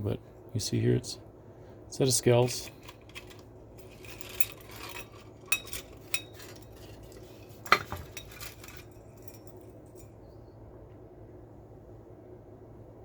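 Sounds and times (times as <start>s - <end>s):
metal scale parts clinking: 2.4s - 10.2s.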